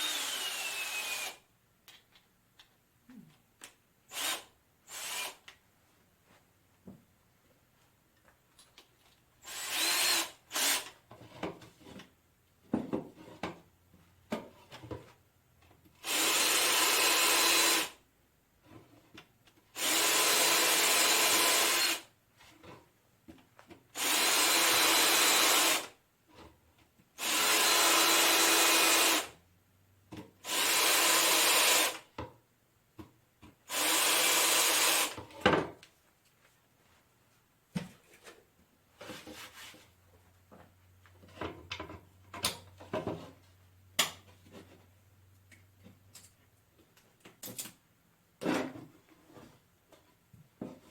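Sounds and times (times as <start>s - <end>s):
hand-held power tool running: 0.0s - 1.4s, 4.1s - 5.4s, 9.5s - 10.9s, 16.0s - 18.0s, 19.8s - 22.0s, 24.0s - 25.9s, 27.2s - 29.3s, 30.5s - 32.0s, 33.7s - 35.2s.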